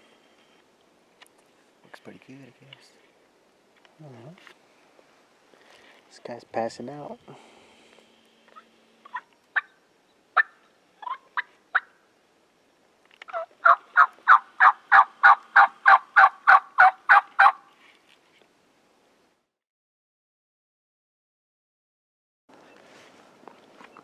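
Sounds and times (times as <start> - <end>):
turkey clucks: 8.5 - 9.8, 10.4 - 11.9, 13.3 - 17.6
turkey yelps: 9.0 - 9.8, 10.4 - 11.9, 13.3 - 17.6.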